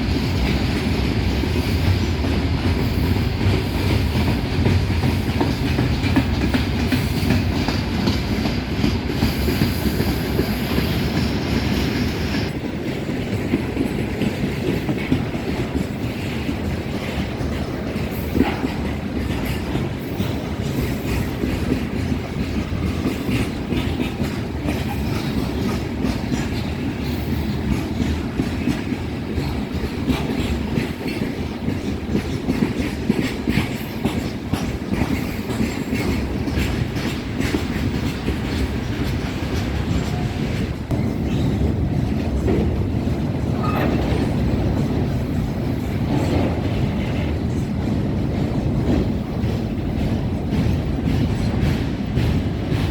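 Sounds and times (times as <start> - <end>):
freight train rumble: 0.0 - 52.9
wheels clacking over rail joints: 0.0 - 52.9.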